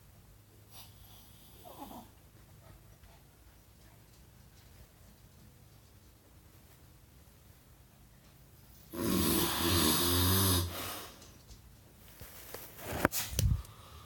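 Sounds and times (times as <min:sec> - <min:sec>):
man snoring: 0:08.9 - 0:10.9.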